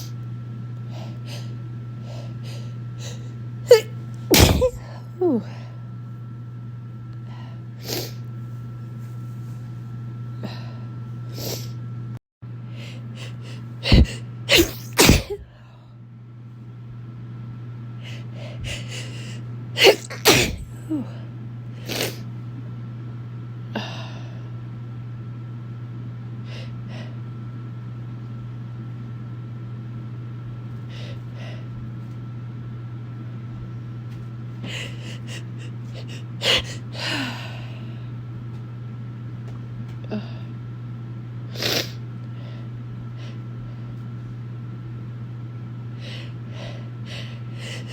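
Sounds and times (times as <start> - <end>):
steady low hum: 0.0 - 47.9
person sneezing: 3.7 - 5.4, 13.8 - 15.5, 19.8 - 21.1, 21.8 - 22.2, 41.6 - 42.0.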